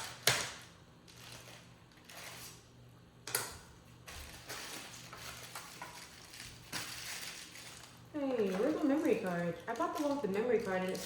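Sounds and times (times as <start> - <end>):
packaging rustling: 1.0 - 2.7, 4.0 - 11.0.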